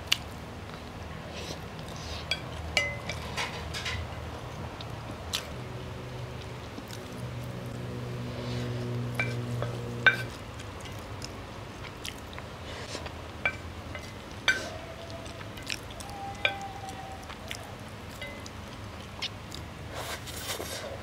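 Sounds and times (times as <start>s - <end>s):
chewing: 0.0s - 3.4s, 4.4s - 7.8s, 8.4s - 21.0s
low steady hum: 0.0s - 21.0s
cutlery clinking on a plate: 2.3s - 4.2s, 9.2s - 10.3s, 18.2s - 18.5s.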